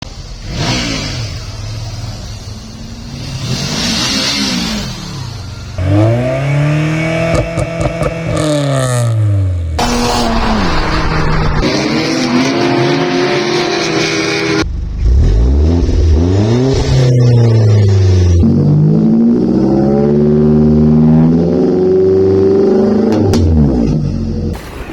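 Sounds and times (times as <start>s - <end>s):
car engines revving: 0.0s - 24.6s.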